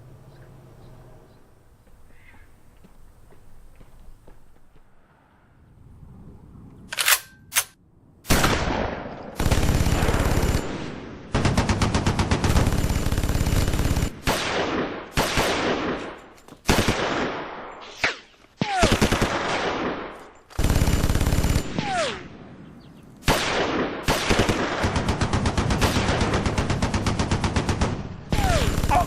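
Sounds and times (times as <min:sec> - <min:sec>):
gunshots: 0:07.0 - 0:22.6, 0:23.2 - 0:29.0
automatic gunfire bursts: 0:09.4 - 0:16.0, 0:20.6 - 0:22.2, 0:23.2 - 0:29.0.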